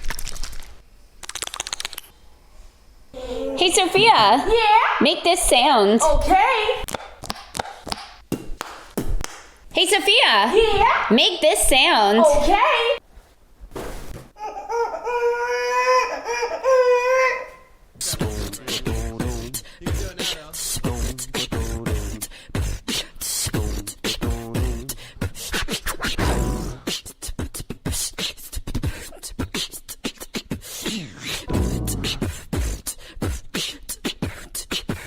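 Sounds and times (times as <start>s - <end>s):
fast beatbox rhythm: 6.8s - 9.6s, 18.0s - 35.0s
beatboxer holding wavering tone: 18.0s - 35.0s.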